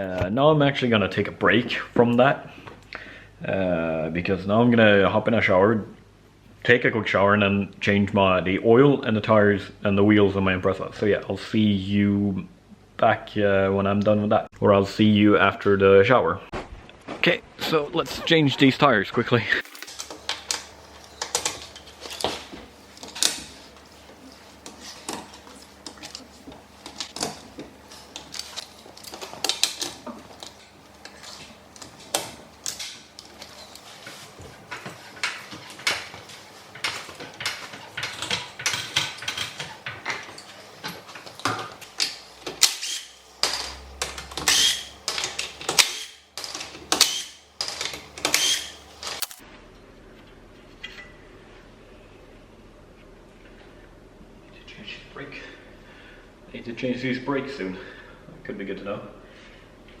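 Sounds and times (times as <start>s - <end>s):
hand tools clicking and knocking: 34.7s - 49.4s.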